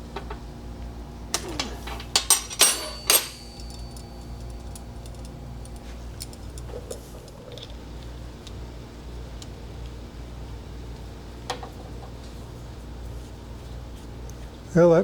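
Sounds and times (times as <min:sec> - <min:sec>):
metallic clinks and clatter: 0:01.4 - 0:07.8.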